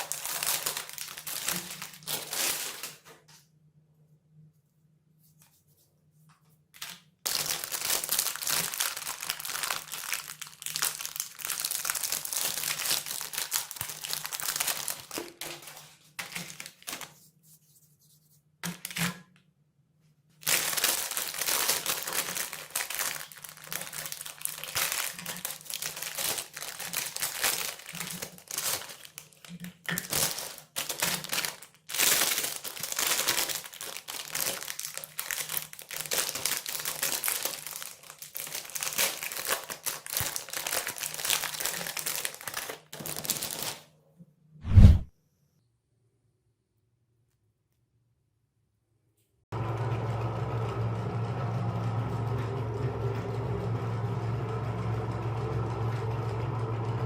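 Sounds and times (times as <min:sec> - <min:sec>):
plastic wrappers crinkling: 0:00.0 - 0:03.3, 0:06.8 - 0:17.3, 0:20.4 - 0:43.9.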